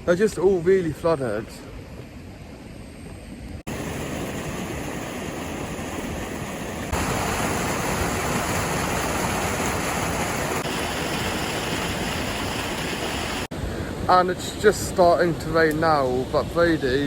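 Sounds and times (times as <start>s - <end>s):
floodwater rushing: 3.7s - 15.4s.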